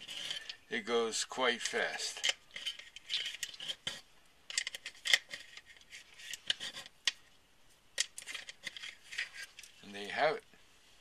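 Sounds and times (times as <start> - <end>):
metallic clicks and scrapes: 0.0 - 0.7, 1.5 - 7.3, 8.0 - 9.8.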